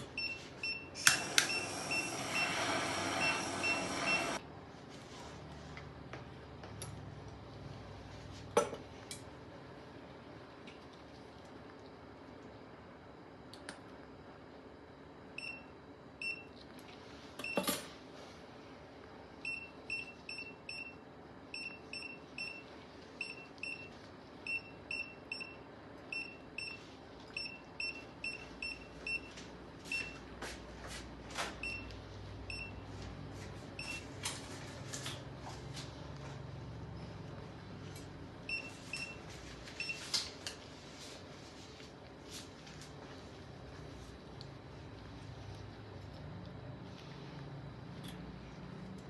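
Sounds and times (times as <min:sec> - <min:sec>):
patient monitor beeping: 0:00.1 - 0:04.4, 0:19.4 - 0:30.2, 0:31.6 - 0:33.0, 0:33.8 - 0:34.2, 0:38.4 - 0:40.1.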